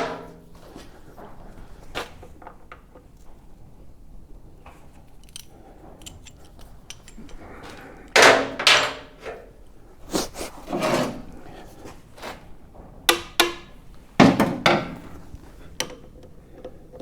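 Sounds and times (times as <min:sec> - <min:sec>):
metal tools clicking: 0:05.1 - 0:07.9.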